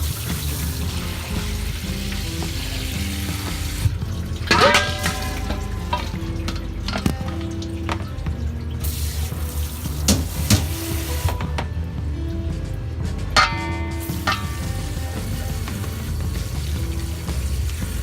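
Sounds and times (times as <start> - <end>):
tap water running into sink: 0.0 - 11.8, 13.4 - 18.0
background music: 0.0 - 18.0.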